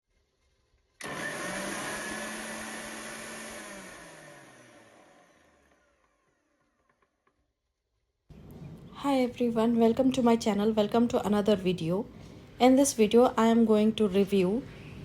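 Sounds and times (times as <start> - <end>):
mixer grinder motor whining: 1.0 - 7.1.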